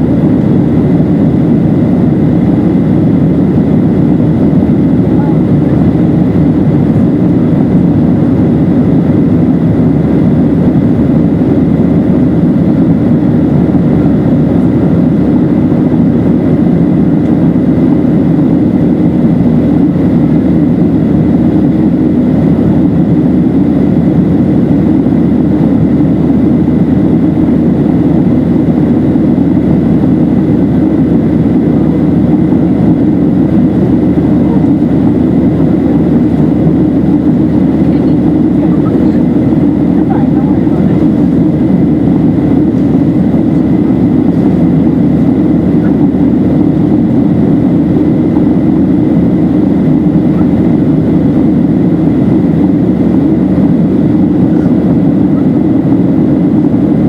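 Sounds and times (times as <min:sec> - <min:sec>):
faint high whine: 0:00.0 - 0:57.0
jet engine rumble: 0:00.0 - 0:57.0.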